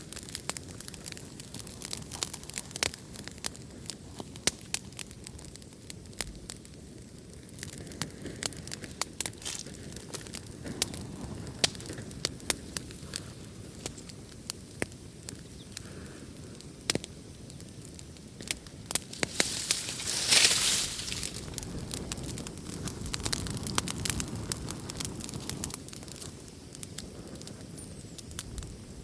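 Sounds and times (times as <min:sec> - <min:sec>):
low rumble of flame: 0:00.0 - 0:29.0
wood fire crackling and popping: 0:00.0 - 0:29.0
hissing rush: 0:18.8 - 0:23.6.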